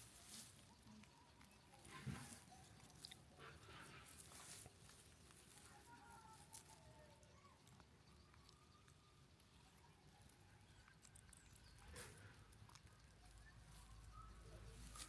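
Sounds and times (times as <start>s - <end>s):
faint taps and rustles: 1.8s - 6.7s.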